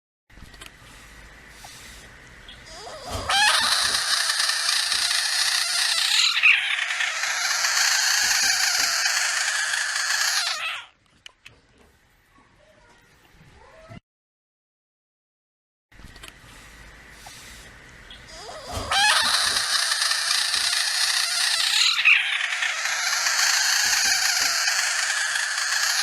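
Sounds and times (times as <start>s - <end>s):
frog screaming: 2.7s - 10.9s, 18.3s - 26.0s.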